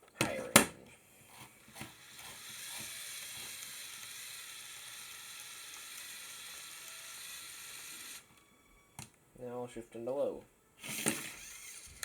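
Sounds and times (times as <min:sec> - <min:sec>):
whir of small electric motors: 0:01.3 - 0:09.1, 0:10.8 - 0:12.0.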